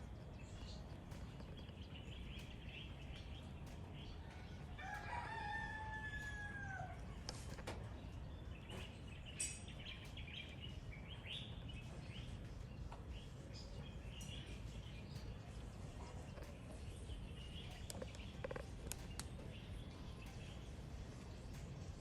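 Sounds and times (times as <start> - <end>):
small birds chirping: 0.0 - 22.0
rooster crowing: 4.6 - 7.1.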